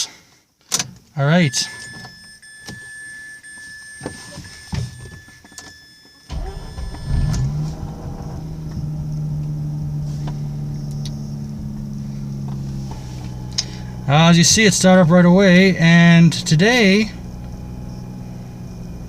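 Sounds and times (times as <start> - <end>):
car engine starting and idling: 6.3 - 19.0.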